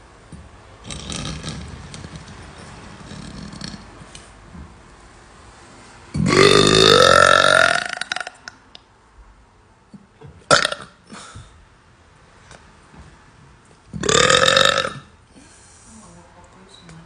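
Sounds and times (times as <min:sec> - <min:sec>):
long loud burp: 0:00.8 - 0:02.3, 0:03.0 - 0:03.9, 0:06.2 - 0:08.5, 0:10.5 - 0:11.0, 0:14.0 - 0:15.1.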